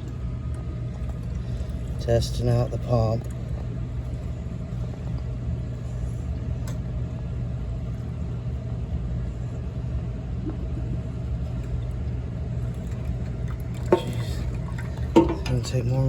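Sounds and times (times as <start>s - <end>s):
gas furnace humming: 0.0s - 16.0s.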